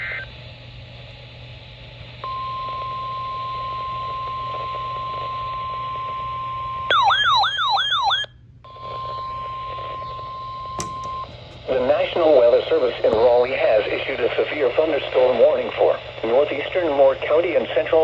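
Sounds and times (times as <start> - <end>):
radio hiss: 0.0 - 0.4, 8.8 - 18.0
warbling siren-like alarm: 6.9 - 11.3.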